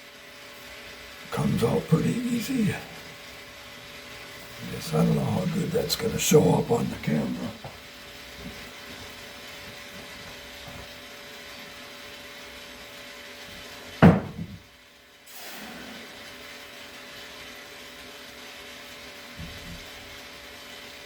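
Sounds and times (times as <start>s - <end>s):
gas torch hissing: 0.0s - 21.0s
loud knock: 14.0s - 14.6s.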